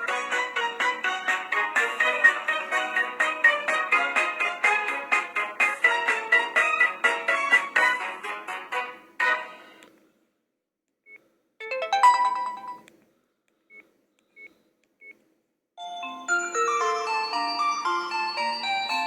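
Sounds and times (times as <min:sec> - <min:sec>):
phone ringtone melody: 0:11.6 - 0:12.9, 0:15.8 - 0:19.0.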